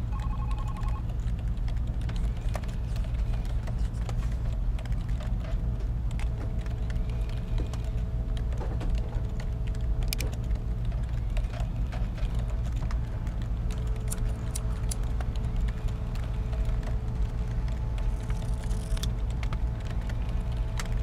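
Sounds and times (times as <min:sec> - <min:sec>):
building machinery hum: 0:00.0 - 0:21.0
keyboard typing clicks: 0:00.1 - 0:01.1.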